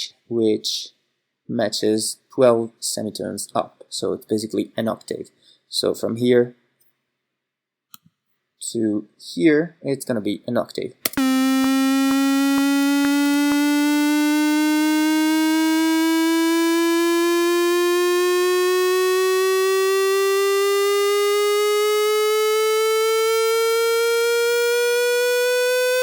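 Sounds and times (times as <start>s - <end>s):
synthesizer note bending upward: 11.1s - 26.0s.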